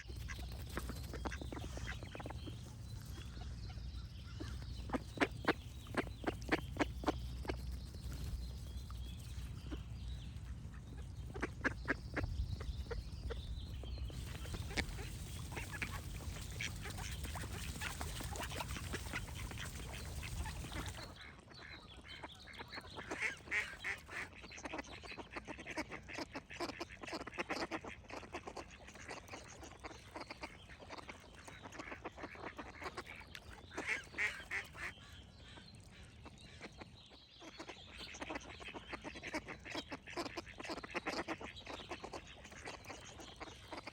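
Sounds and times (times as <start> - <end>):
ducks quacking: 0.0 - 7.7, 9.6 - 43.9.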